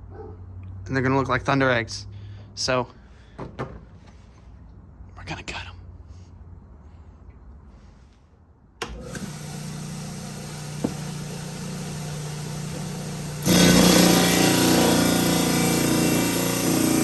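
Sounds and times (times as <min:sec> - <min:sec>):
trim saw humming: 0:08.8 - 0:17.0
saw blade cutting stone: 0:09.0 - 0:17.0.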